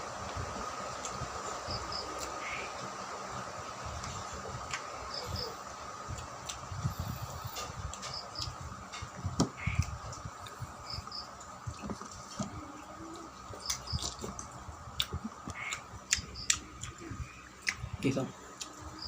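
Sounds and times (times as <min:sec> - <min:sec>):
chewing and mouth smacks: 0:13.6 - 0:17.9.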